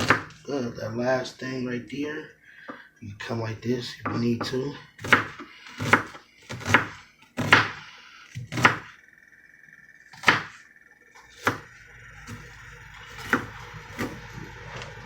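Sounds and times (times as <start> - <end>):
knife chopping on cutting board: 0.0 - 0.4, 5.0 - 7.8, 8.4 - 8.9, 10.2 - 10.5, 11.4 - 11.6, 13.1 - 14.2.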